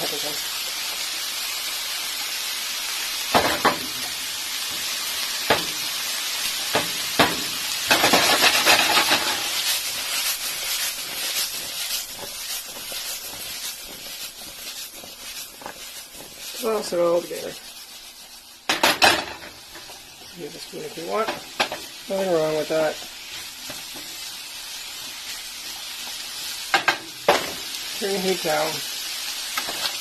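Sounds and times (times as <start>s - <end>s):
vegetables sizzling in a pan: 0.0s - 30.0s.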